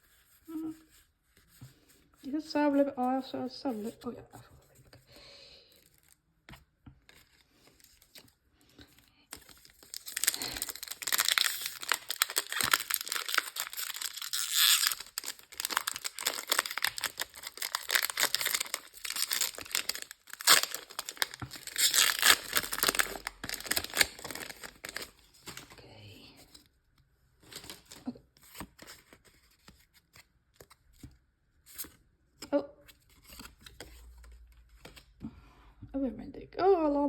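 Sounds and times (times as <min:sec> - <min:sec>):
foil wrapper tearing and crinkling: 0:09.3 - 0:25.8, 0:27.5 - 0:28.2.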